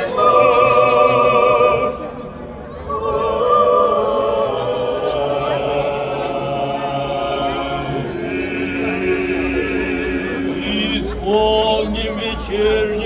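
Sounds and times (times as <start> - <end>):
choir singing unaccompanied chant: 0.0 - 13.0.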